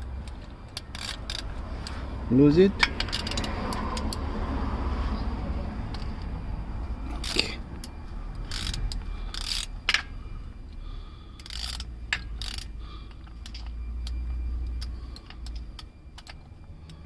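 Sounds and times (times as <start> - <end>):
low steady rumble: 0.0 - 17.0
socket ratchet clicking and scraping: 0.2 - 2.2, 2.8 - 4.3, 7.1 - 10.1, 11.4 - 17.0.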